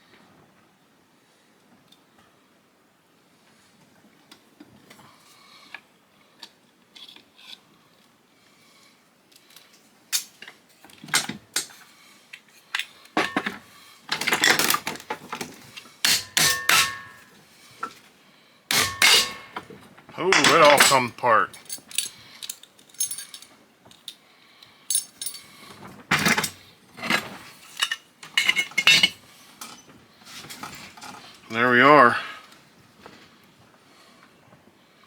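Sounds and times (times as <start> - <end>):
tools clicking and scraping: 16.0 - 17.3, 18.7 - 19.7, 20.3 - 25.6
metal parts ringing: 16.1 - 17.3, 18.7 - 19.6, 20.3 - 23.5, 24.9 - 25.5.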